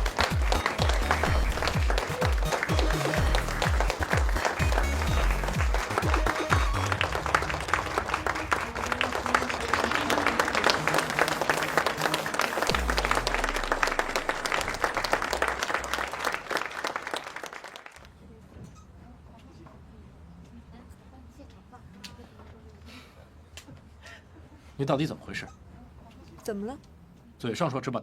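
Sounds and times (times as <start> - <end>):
low background music: 0.0 - 16.0
audience applauding: 0.0 - 18.0.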